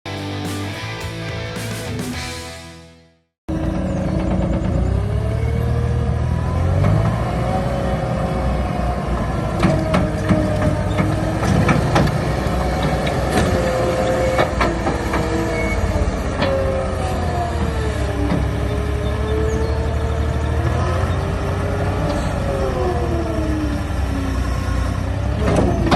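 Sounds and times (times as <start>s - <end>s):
diesel engine running: 3.5s - 25.9s
machine knocks and clanks: 9.6s - 13.8s.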